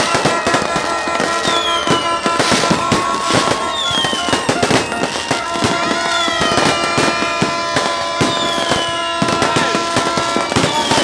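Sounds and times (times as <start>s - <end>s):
fireworks bangs and crackles: 0.0s - 11.0s
fireworks whistles falling in pitch: 0.0s - 11.0s.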